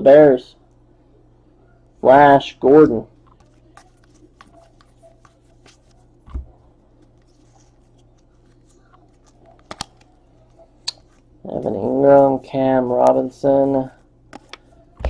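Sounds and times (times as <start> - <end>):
trading cards rustling: 3.2 - 15.0.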